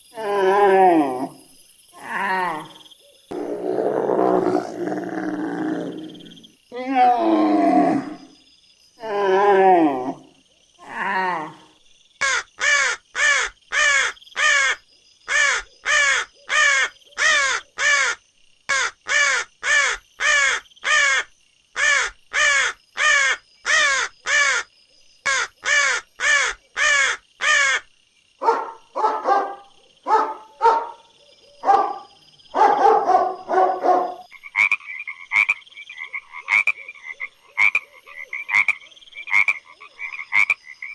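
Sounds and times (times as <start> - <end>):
animal calling: 2.0 - 8.4.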